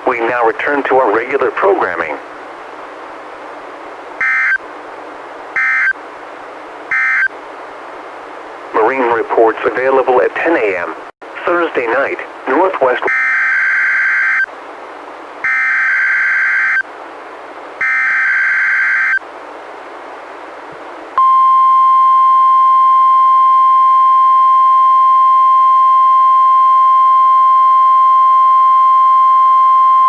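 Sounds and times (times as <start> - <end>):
screeching digital header tones: 4.2 - 4.6, 5.6 - 6.0, 6.9 - 7.3, 13.0 - 14.5, 15.4 - 16.8, 17.8 - 19.2
steady warning alarm tone: 4.2 - 4.6, 5.6 - 6.0, 6.9 - 7.3, 13.1 - 14.5, 15.4 - 16.8, 17.8 - 19.2, 21.2 - 30.0.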